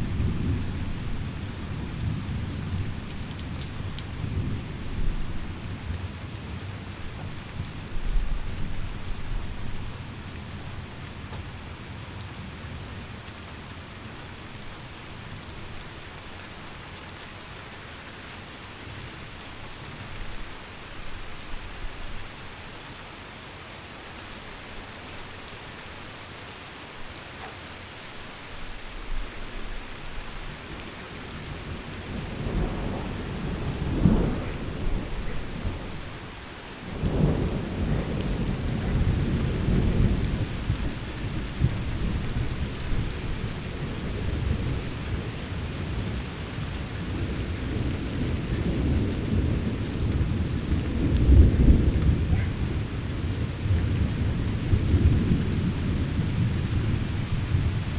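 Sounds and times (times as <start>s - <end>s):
heavy rain falling: 0.0s - 57.9s
rolling thunder: 31.4s - 57.9s.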